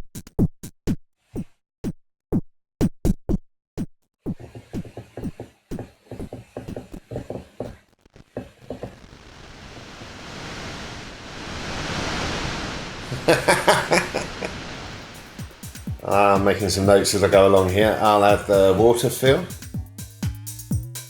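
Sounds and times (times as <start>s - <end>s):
glitchy stutters: 7.8s - 18.6s
wash of noise: 9.0s - 18.2s
electronic dance loop: 15.0s - 21.0s.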